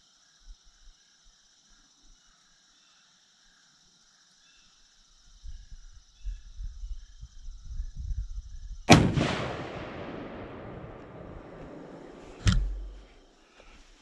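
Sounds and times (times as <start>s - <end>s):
insects chirping: 0.0s - 14.0s
low rumbling microphone noise: 5.5s - 13.2s
rifle shot echoing: 8.9s - 13.1s.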